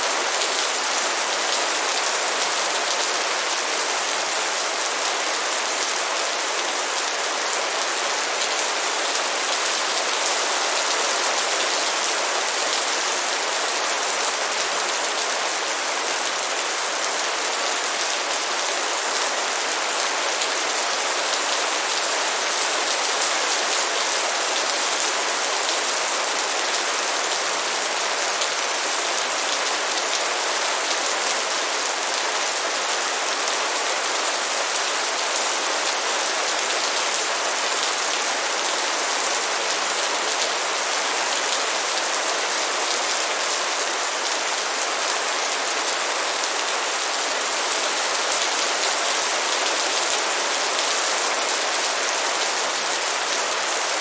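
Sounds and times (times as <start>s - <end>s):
light rain falling: 0.0s - 54.0s.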